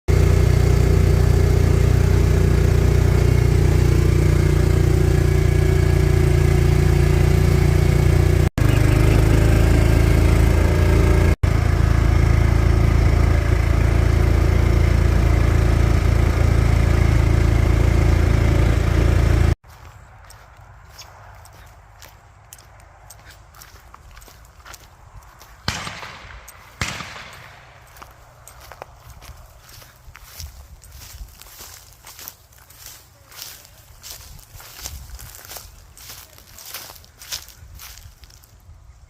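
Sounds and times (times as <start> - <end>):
vehicle engine humming: 0.1 - 39.0.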